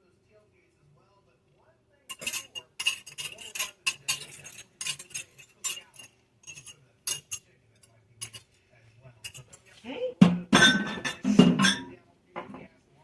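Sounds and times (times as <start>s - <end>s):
metal utensil scraping a dish: 2.1s - 8.6s, 9.2s - 9.8s.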